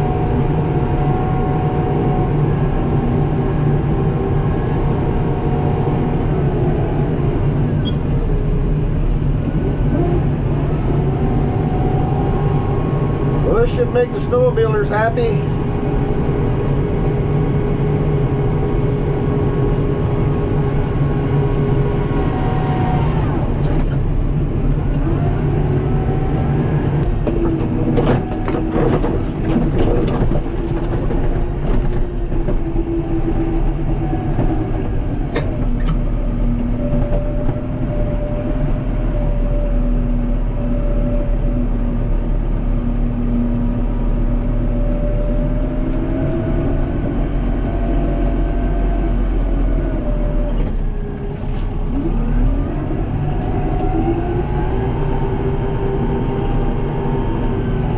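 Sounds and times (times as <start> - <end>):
tractor diesel engine under load: 0.0 - 57.9.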